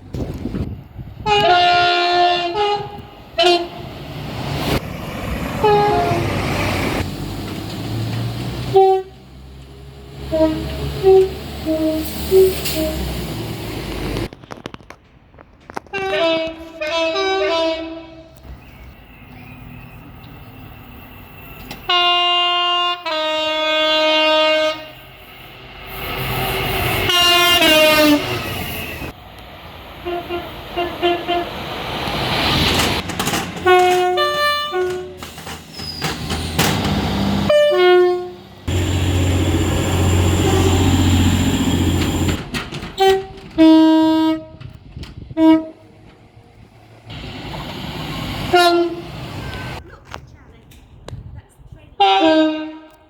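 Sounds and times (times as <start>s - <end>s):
moving train rumble: 0.0s - 53.0s
train horn blasts: 1.2s - 3.9s, 5.6s - 6.4s, 8.7s - 9.3s, 10.3s - 13.1s, 15.9s - 18.4s, 21.9s - 25.1s, 26.9s - 29.1s, 30.0s - 31.6s, 33.6s - 35.2s, 37.4s - 41.3s, 43.0s - 45.9s, 48.4s - 49.8s, 52.0s - 53.0s.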